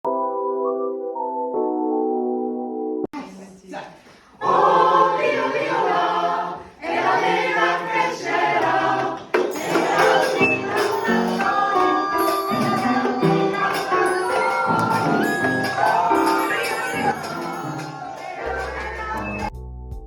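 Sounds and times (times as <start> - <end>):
choir singing: 4.3 - 19.5
bright high percussion: 9.0 - 19.6.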